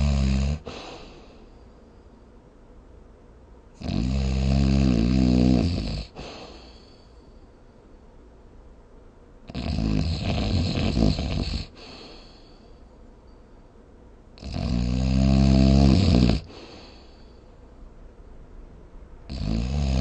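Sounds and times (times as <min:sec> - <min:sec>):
person snoring loudly: 0:00.0 - 0:01.1, 0:03.8 - 0:06.4, 0:09.5 - 0:12.0, 0:14.4 - 0:16.7, 0:19.3 - 0:20.0.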